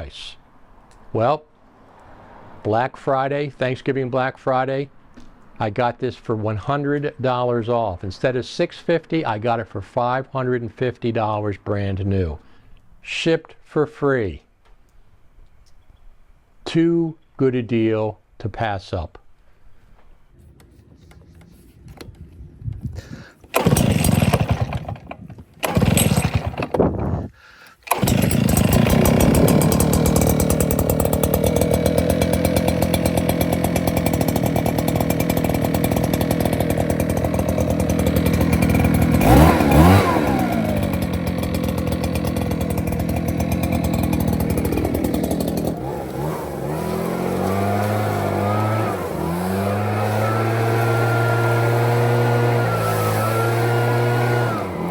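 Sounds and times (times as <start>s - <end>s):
leaf blower engine running: 23.4s - 26.8s, 27.8s - 54.9s.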